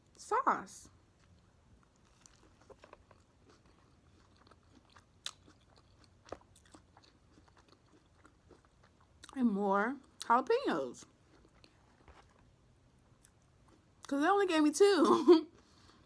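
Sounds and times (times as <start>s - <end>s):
close-miked chewing: 1.0s - 9.4s, 11.0s - 14.1s
small crackles: 1.2s - 6.5s.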